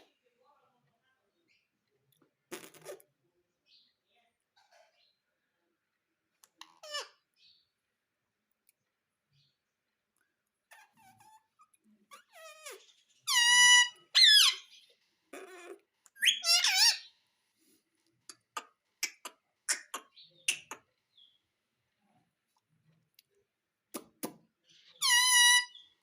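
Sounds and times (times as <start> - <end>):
parrot calling: 6.7 - 7.2, 12.1 - 17.1, 24.9 - 25.9.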